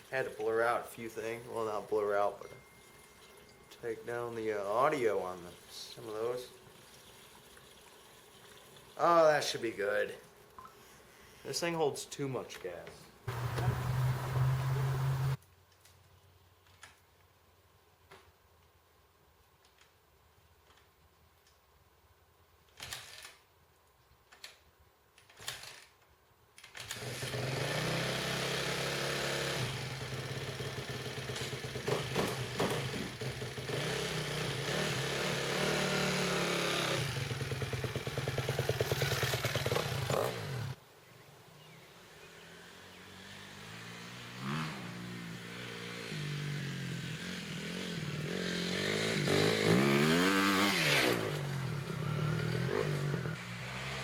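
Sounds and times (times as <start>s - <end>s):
dirt bike engine revving: 13.3s - 15.4s, 26.9s - 40.8s, 42.2s - 54.0s.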